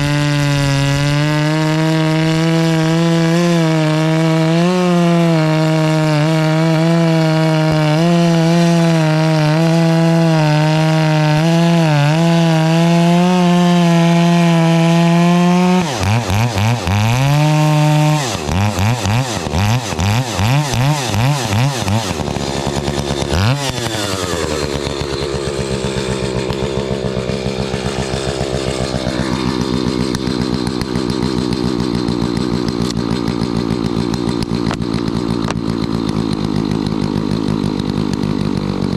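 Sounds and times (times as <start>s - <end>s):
chainsaw engine revving: 0.0s - 38.9s.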